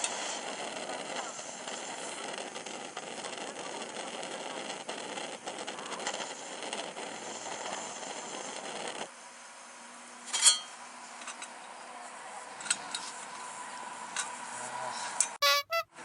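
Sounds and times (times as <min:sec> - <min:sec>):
steady hiss: 0:00.0 - 0:10.2.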